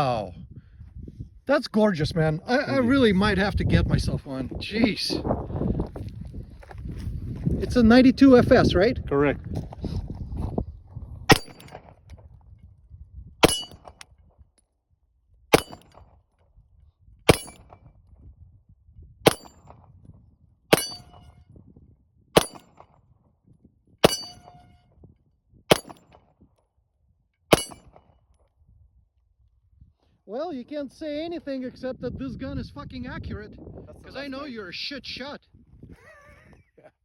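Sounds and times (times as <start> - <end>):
pistol shots: 11.3 - 11.9, 13.4 - 14.0, 15.5 - 16.0, 17.3 - 17.8, 19.3 - 19.7, 20.7 - 21.3, 22.4 - 22.8, 24.0 - 24.6, 25.7 - 26.1, 27.5 - 28.0
steel target ringing: 13.4 - 13.9, 17.3 - 17.6, 20.7 - 21.4, 24.0 - 24.8, 27.5 - 27.9.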